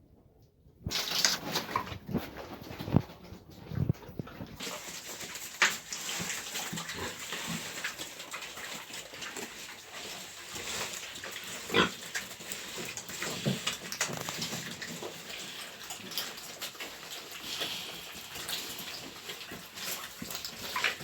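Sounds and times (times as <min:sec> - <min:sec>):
pigs calling: 0:06.5 - 0:21.0.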